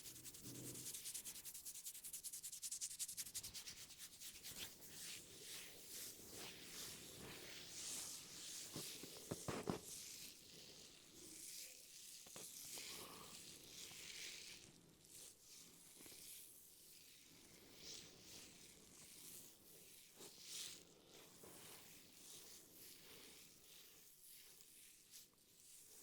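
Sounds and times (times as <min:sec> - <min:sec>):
hands rubbing through hair: 0:00.0 - 0:09.5.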